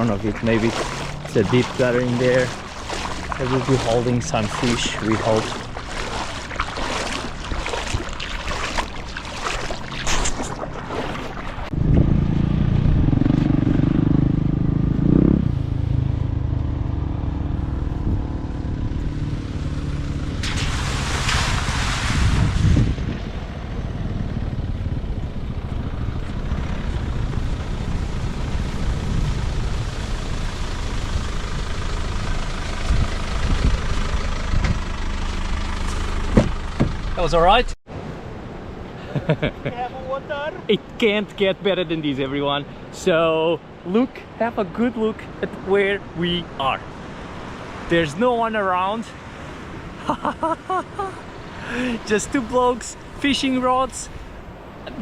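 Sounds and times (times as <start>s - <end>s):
vehicle engine rumbling: 0.0s - 38.9s.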